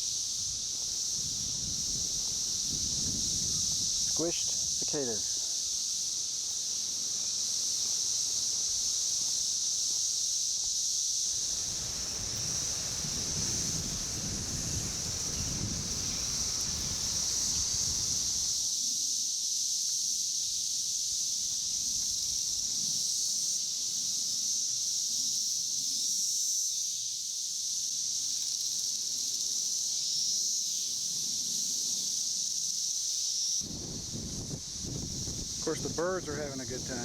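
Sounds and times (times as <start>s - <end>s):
cicadas droning: 0.0s - 37.0s
wind rumbling on microphone: 0.3s - 4.8s, 11.3s - 18.5s, 33.6s - 37.0s.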